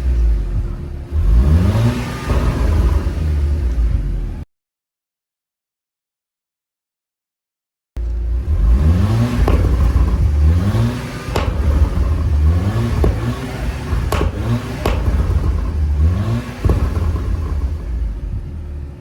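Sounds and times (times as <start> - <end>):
car engine revving: 0.0 - 4.4, 8.0 - 19.0
exhaust pops and bangs: 0.0 - 4.4, 8.5 - 19.0.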